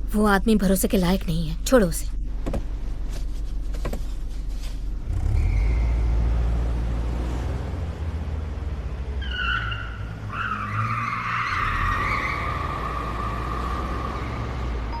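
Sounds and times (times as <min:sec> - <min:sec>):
car engine rumble: 0:00.0 - 0:15.0
car tyres squealing: 0:05.0 - 0:06.5, 0:09.1 - 0:14.9.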